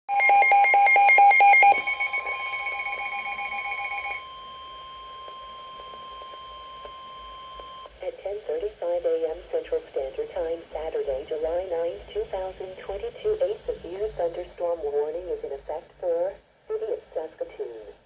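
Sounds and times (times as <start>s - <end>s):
two-pitch alarm beeping: 0.1s - 7.9s
steady warning tone: 0.1s - 8.0s.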